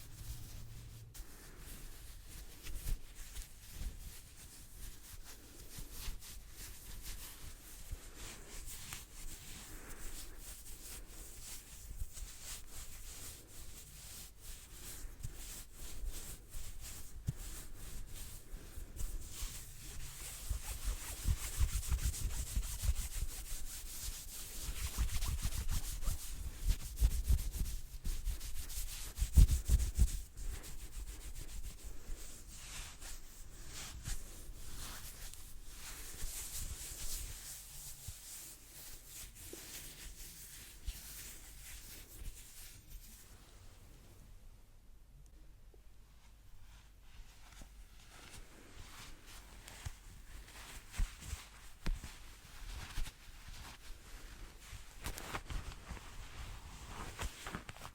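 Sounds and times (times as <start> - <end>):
hands rubbing together: 0.0 - 43.4.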